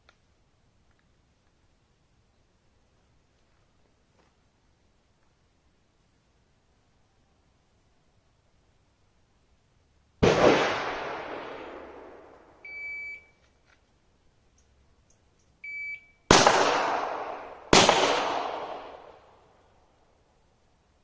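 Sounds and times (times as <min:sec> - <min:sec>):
pistol shots echoing: 0:10.2 - 0:12.3, 0:16.3 - 0:19.2
shot timer beeps: 0:12.6 - 0:13.4, 0:15.6 - 0:16.2.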